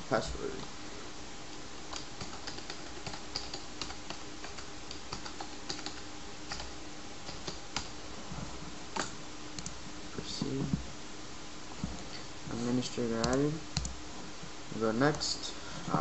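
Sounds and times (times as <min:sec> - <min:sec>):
faint steady hum: 0:00.0 - 0:16.0
computer keyboard typing: 0:01.9 - 0:07.9, 0:13.2 - 0:13.9.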